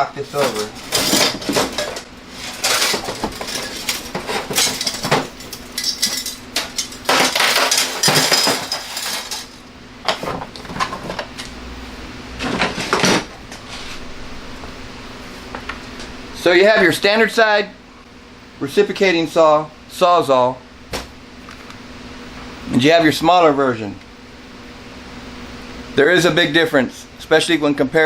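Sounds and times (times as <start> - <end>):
faint steady hum: 0.0 - 28.0
tools clattering on hard surface: 0.4 - 9.6.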